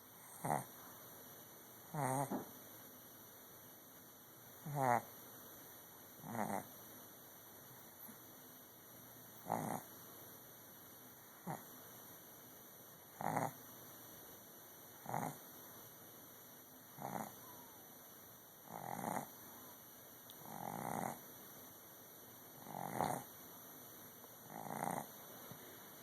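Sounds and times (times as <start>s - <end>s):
dog snoring: 0.2s - 0.8s, 1.9s - 2.5s, 4.6s - 5.1s, 6.2s - 6.7s, 9.4s - 9.9s, 11.4s - 11.7s, 13.1s - 13.6s, 15.0s - 15.4s, 17.0s - 17.6s, 18.6s - 19.4s, 20.4s - 21.3s, 22.6s - 23.3s, 24.4s - 25.2s.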